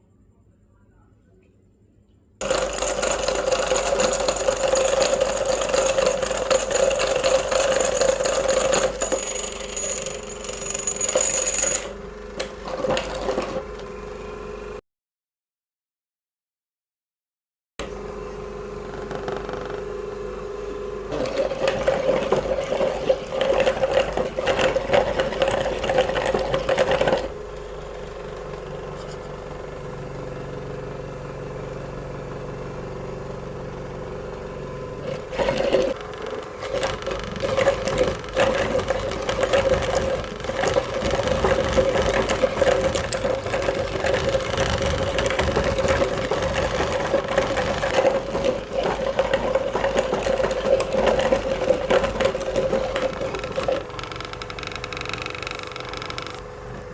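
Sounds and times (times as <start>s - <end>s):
grinding and crackling: 2.4s - 13.8s, 21.1s - 29.2s, 35.0s - 56.5s
meat grinder motor hum: 2.4s - 14.6s, 17.8s - 56.9s.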